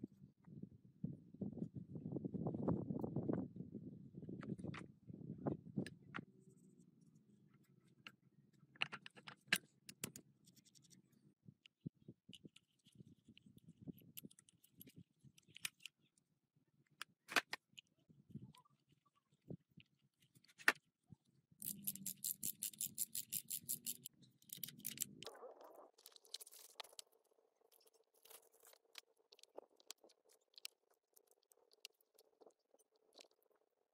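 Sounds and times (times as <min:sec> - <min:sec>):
hand tool clicks and scrapes: 0:21.6 - 0:25.3.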